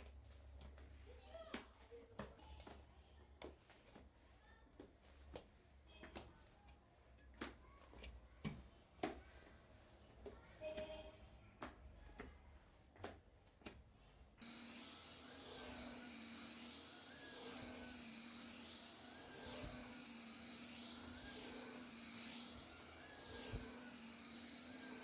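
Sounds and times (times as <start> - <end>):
vacuum cleaner whining: 14.4 - 25.0.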